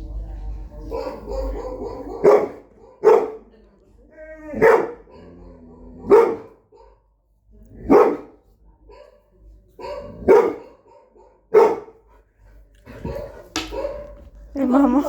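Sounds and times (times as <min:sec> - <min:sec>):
dog barking: 0:00.9 - 0:03.5, 0:04.5 - 0:07.1, 0:07.8 - 0:12.0, 0:13.0 - 0:14.4.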